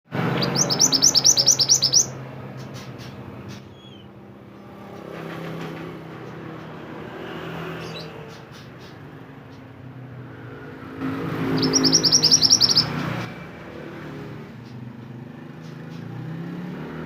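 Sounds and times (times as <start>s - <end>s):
background traffic rumble: 0.1s - 17.0s
songbird chirping: 0.2s - 5.0s, 11.0s - 13.3s.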